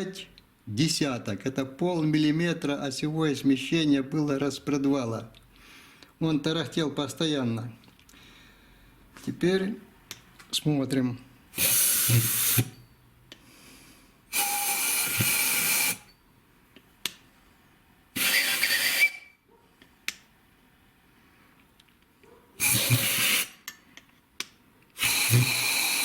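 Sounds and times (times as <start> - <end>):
compressed air hissing: 11.5 - 12.8, 13.5 - 16.1, 18.2 - 19.2, 22.6 - 23.6, 25.0 - 26.0.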